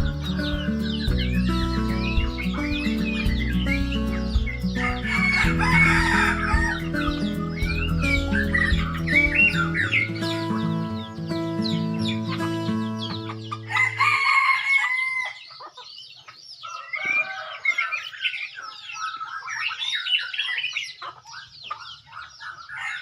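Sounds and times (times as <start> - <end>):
background music: 0.0 - 15.1
chirping birdsong: 0.0 - 23.0
rooster crowing: 4.7 - 7.2, 13.5 - 15.5, 16.7 - 18.2.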